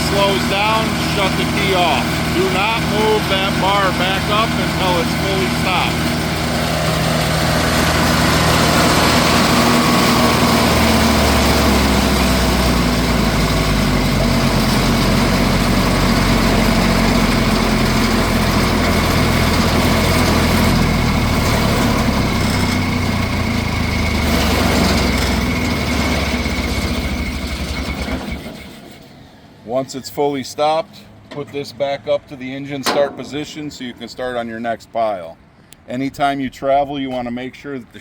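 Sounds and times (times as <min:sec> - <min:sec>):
wood chipper diesel engine running: 0:00.0 - 0:29.6.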